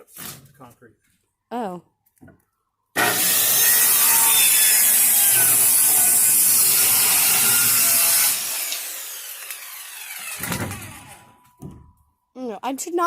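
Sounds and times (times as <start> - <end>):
power saw cutting wood: 3.0 - 11.4
saw blade spinning down: 6.9 - 11.4.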